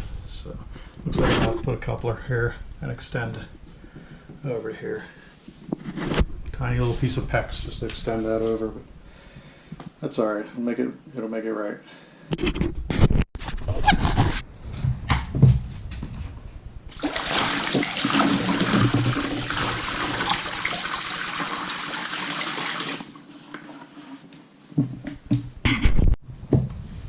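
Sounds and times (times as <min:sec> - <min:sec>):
water rushing loudly: 0:16.9 - 0:23.2.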